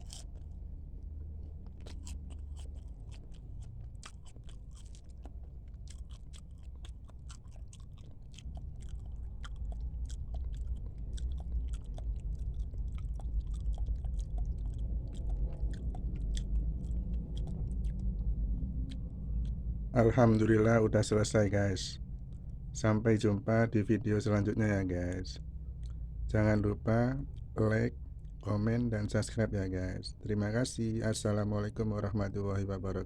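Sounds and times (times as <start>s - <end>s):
person chewing: 0.0s - 20.8s, 22.1s - 22.7s, 25.4s - 26.1s, 27.2s - 28.7s
low rumble: 0.0s - 33.0s.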